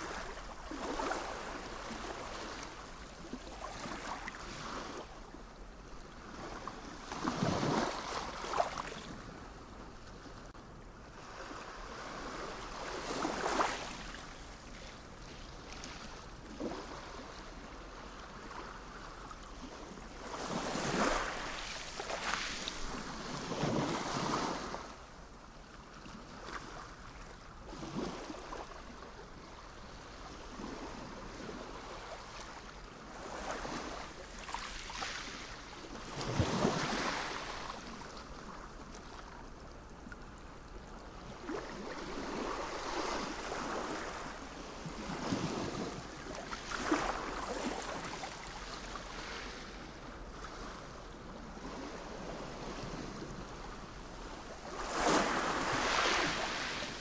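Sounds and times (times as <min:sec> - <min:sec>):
sea waves breaking: 0:00.0 - 0:05.3, 0:11.3 - 0:17.4, 0:20.3 - 0:24.9, 0:31.6 - 0:39.2, 0:41.3 - 0:50.8, 0:51.4 - 0:57.0.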